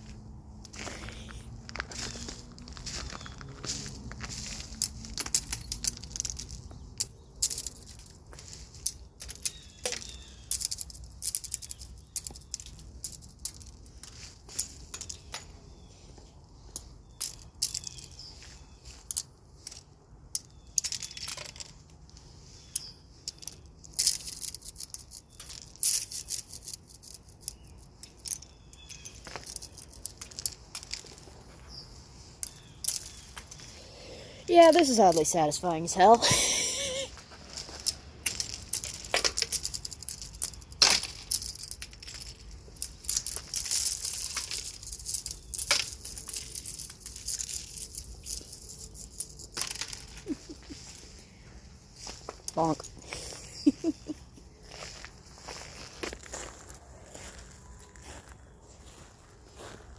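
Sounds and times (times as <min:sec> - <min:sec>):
ice crunching and cracking: 0:00.0 - 0:15.9, 0:22.6 - 0:51.2
breaking ice tinkling: 0:00.8 - 0:15.6, 0:34.5 - 0:51.2.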